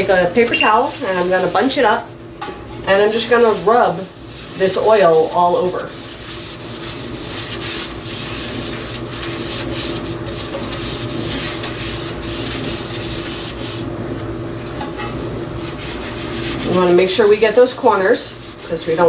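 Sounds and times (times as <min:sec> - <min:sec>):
paper towel scrubbing a pan: 0:03.4 - 0:13.8, 0:15.6 - 0:19.0.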